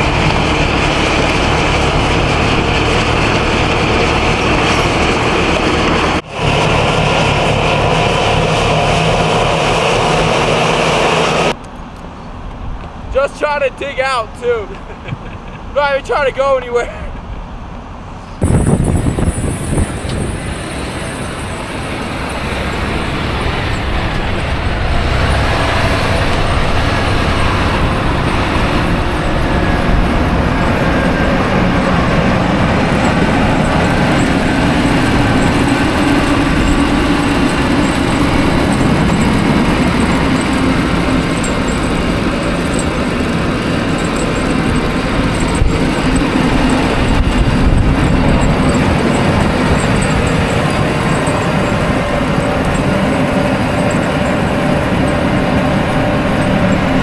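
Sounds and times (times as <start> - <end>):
vehicle engine rumble: 0.0 - 57.0
rushing noise: 13.1 - 57.0.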